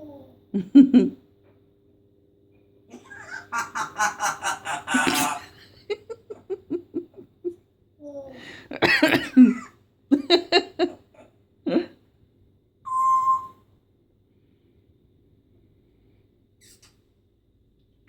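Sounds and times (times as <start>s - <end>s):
parrot mimicking laughter: 2.9s - 5.6s
parrot short notes: 12.9s - 13.6s.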